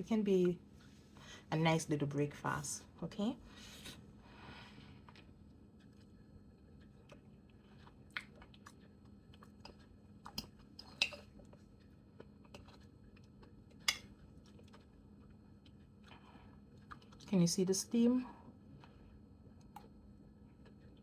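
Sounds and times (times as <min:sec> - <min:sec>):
person chewing food: 0:04.7 - 0:17.3, 0:18.5 - 0:21.0.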